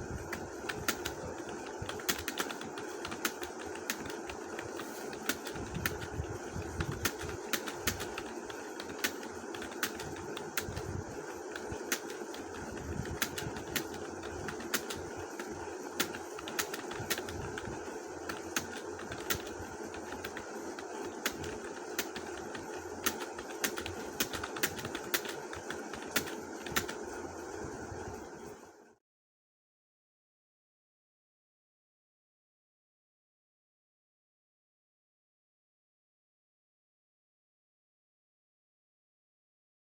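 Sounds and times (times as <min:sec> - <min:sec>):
steady background hum: 0:00.0 - 0:29.0.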